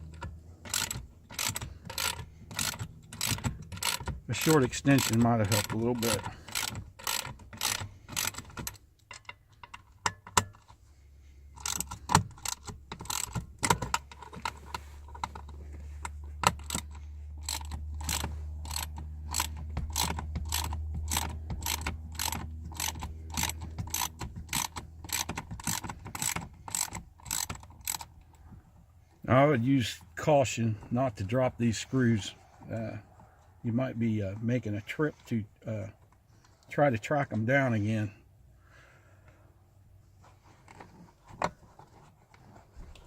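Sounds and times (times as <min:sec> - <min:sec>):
hand ratchet clicking: 0:00.0 - 0:10.7, 0:11.5 - 0:28.4.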